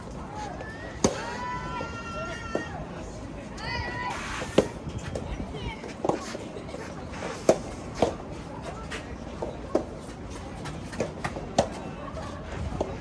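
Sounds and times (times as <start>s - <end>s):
tennis balls bouncing on court: 0.4s - 2.8s, 4.4s - 6.8s, 9.4s - 12.0s
tennis balls struck by rackets: 0.9s - 1.4s, 4.1s - 6.4s, 7.4s - 8.3s, 10.6s - 11.9s.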